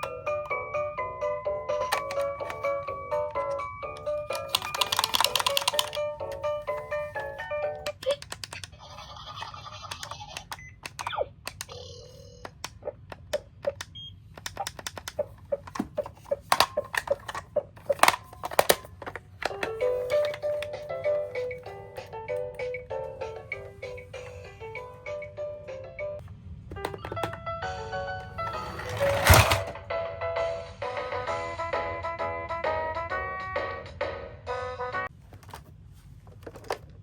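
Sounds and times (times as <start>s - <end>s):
toy cars clicking and clattering: 3.4s - 6.9s, 7.9s - 11.7s, 14.4s - 20.7s, 28.4s - 29.8s.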